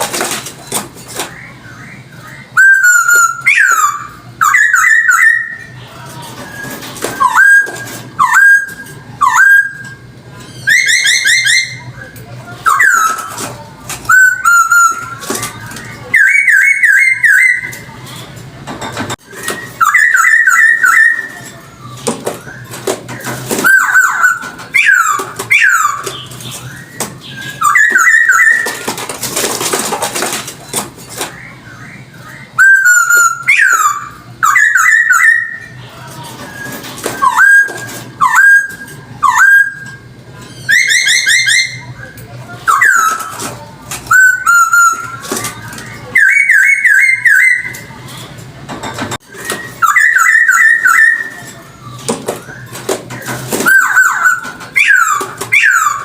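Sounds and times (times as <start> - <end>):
bird singing whistled phrases: 1.4 - 5.8, 16.0 - 17.9, 19.2 - 22.8, 23.6 - 28.8, 31.4 - 35.8, 44.1 - 45.2, 45.8 - 47.9, 49.3 - 51.6, 53.6 - 56.0.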